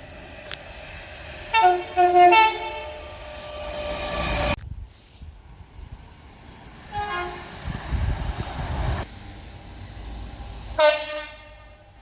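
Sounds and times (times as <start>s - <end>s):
train rumble: 0.0s - 12.0s
two-tone train horn: 1.5s - 3.2s, 6.9s - 7.6s, 10.8s - 11.9s.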